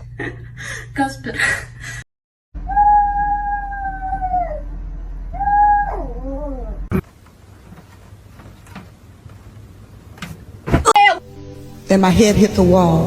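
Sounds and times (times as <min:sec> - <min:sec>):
cat yowling: 0:02.7 - 0:04.7, 0:05.3 - 0:06.9.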